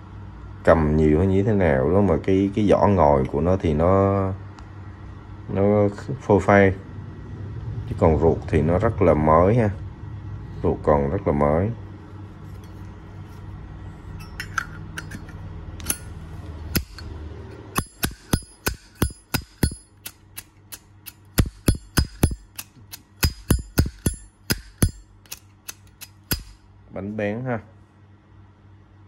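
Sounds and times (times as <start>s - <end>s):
lighter flint wheel striking: 14.3s - 17.1s, 17.7s - 26.6s.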